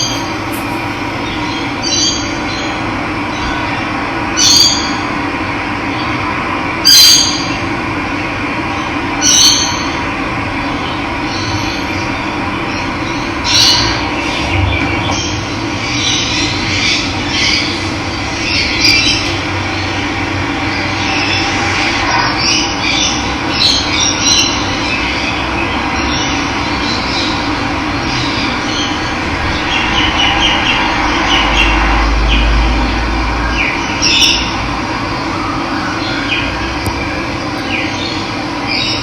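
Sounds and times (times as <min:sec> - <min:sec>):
birds calling and chirping: 0:00.0 - 0:03.7.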